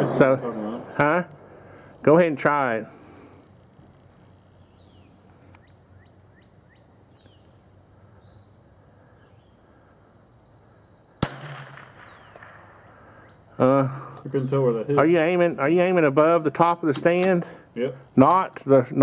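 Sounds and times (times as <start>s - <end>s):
rifle shot with echo: 11.2s - 13.0s.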